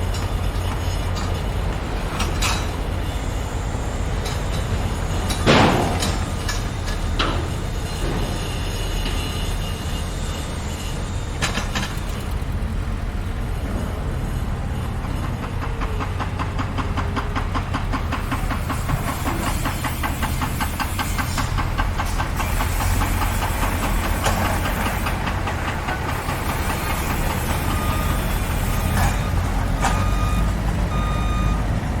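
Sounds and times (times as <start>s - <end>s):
rapid mechanical clatter: 0.0s - 30.3s
heavy machinery engine rumble: 0.0s - 32.0s
reversing alarm beeping: 26.3s - 31.9s.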